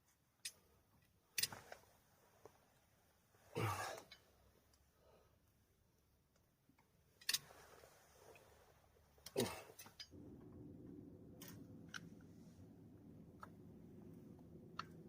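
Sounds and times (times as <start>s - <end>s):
metallic clicks of tools: 1.3s - 1.8s, 7.2s - 7.5s
steady low hum: 9.0s - 15.0s.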